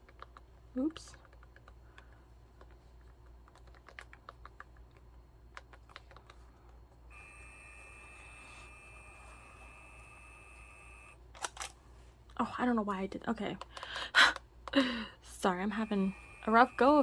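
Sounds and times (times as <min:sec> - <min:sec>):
label maker print motor whirring: 0:07.1 - 0:11.2, 0:15.7 - 0:17.0.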